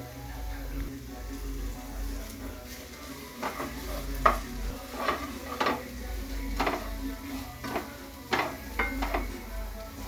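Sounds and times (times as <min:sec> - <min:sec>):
metal spoon scraping cooking pot: 0:03.4 - 0:09.4.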